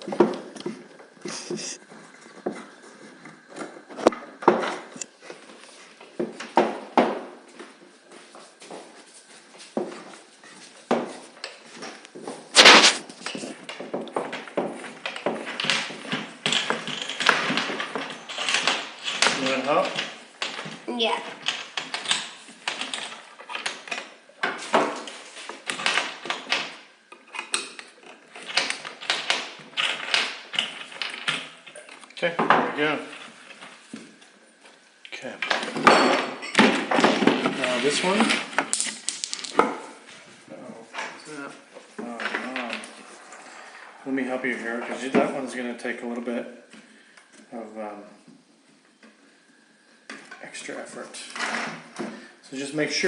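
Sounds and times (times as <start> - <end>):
wooden parts knocking and clattering: 0.0 - 5.1, 6.2 - 7.7, 10.9 - 34.1, 35.4 - 40.1.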